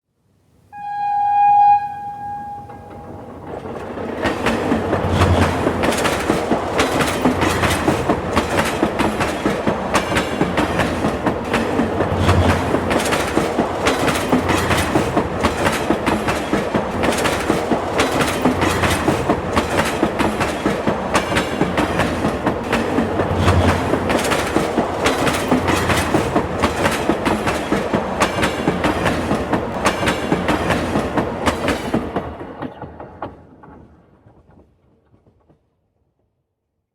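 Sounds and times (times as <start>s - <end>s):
train horn blast: 0.7s - 3.4s
train rumbling past: 0.8s - 35.6s
wheels clacking over rail joints: 2.5s - 35.7s.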